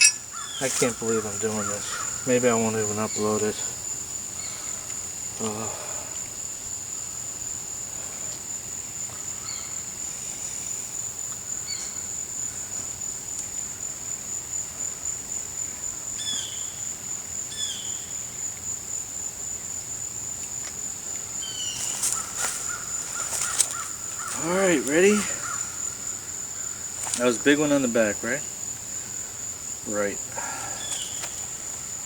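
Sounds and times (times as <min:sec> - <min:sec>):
bird chirping: 0:00.0 - 0:03.5
high-pitched insect trill: 0:00.0 - 0:32.0.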